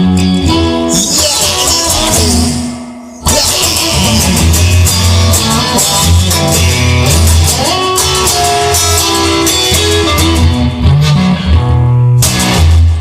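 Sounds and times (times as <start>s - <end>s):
bass line: 0.0s - 13.0s
electric guitar: 0.0s - 13.0s
steady drum beat: 1.0s - 10.6s.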